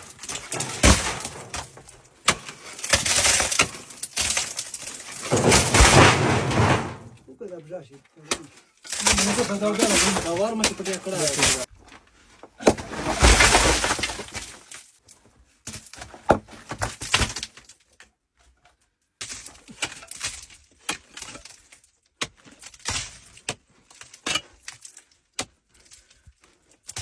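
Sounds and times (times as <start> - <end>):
hard pieces clinking: 0.0 - 7.2, 8.9 - 11.7
rushing clatter: 5.1 - 7.2.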